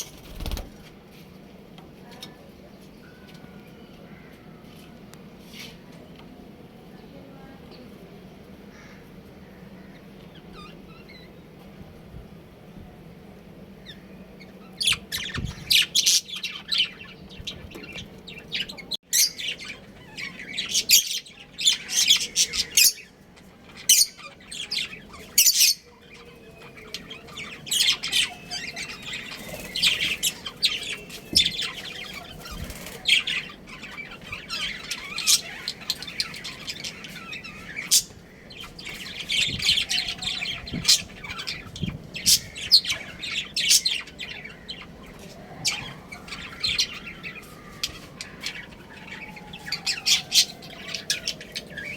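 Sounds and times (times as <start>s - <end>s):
budgerigars chirping: 26.8s - 47.4s.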